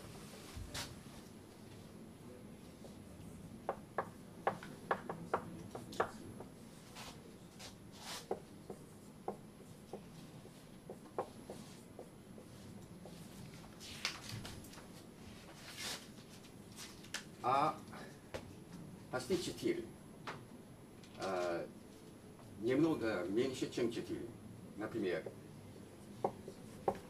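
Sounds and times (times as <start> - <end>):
chalk tapping on a board: 3.7 - 13.3, 25.2 - 25.4, 26.2 - 27.0
writing strokes on a board: 3.7 - 13.9, 26.0 - 27.0.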